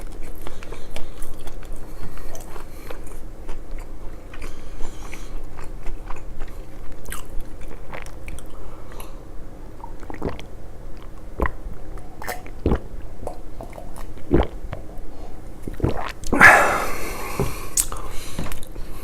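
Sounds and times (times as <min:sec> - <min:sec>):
close chewing: 0:00.0 - 0:09.2, 0:09.8 - 0:14.5
wet mouth clicks and smacks: 0:17.8 - 0:18.7.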